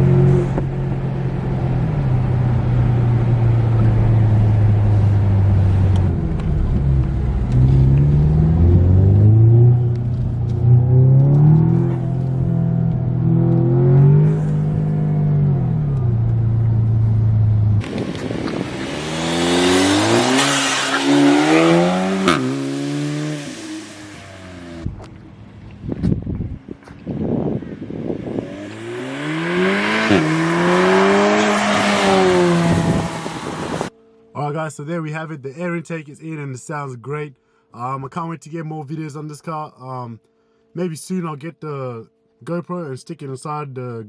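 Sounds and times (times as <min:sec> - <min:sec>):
car engine accelerating: 0:00.0 - 0:33.9
wind-blown engine note: 0:00.1 - 0:33.9.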